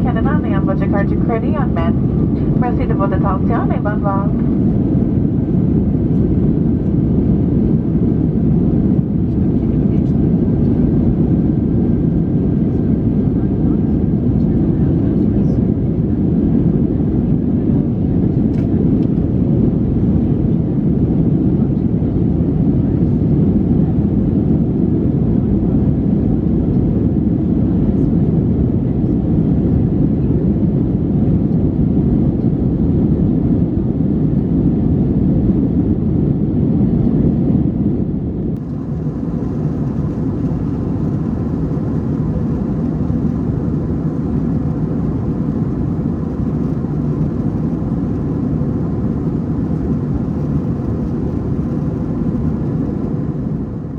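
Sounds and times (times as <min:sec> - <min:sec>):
aircraft engine drone: 0:00.0 - 0:17.7, 0:31.7 - 0:53.9
airflow rush: 0:38.6 - 0:53.9.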